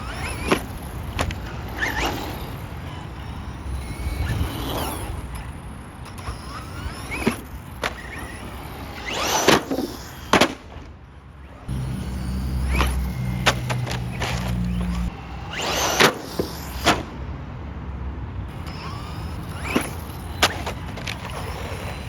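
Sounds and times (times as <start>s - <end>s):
tyre noise: 0.0s - 17.2s, 18.5s - 22.0s
rc car motor whining: 0.0s - 17.5s, 18.5s - 22.0s
sharp knocks from landings: 6.1s - 10.9s, 12.0s - 17.2s, 18.7s - 21.8s.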